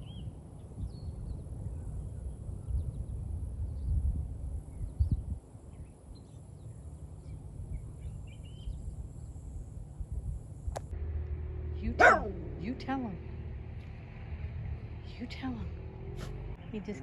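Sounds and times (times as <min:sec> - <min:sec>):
wind rumble on microphone: 0:00.0 - 0:11.0.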